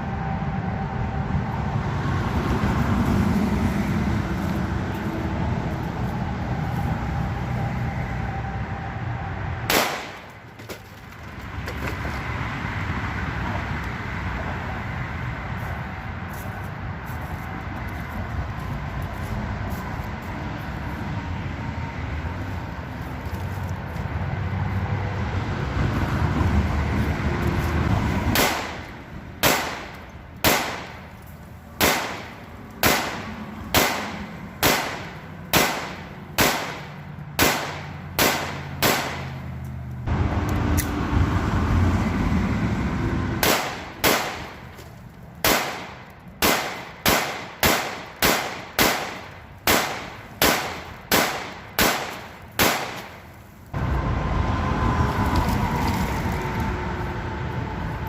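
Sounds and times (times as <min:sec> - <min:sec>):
pistol shots: 0:09.7 - 0:10.3, 0:28.4 - 0:31.0, 0:31.8 - 0:39.3, 0:43.4 - 0:44.6, 0:45.4 - 0:53.2.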